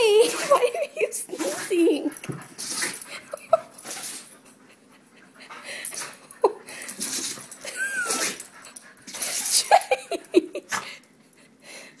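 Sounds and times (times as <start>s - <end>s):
dog whimpering and yipping: 7.6s - 8.5s
dog sneezing and snorting: 8.0s - 8.4s.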